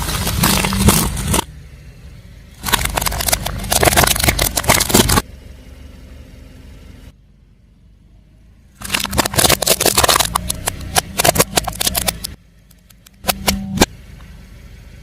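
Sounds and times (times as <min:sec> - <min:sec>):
tyre crushing something crunchy: 0:00.0 - 0:01.5, 0:02.6 - 0:05.2, 0:08.8 - 0:12.3
car engine running: 0:00.0 - 0:15.0.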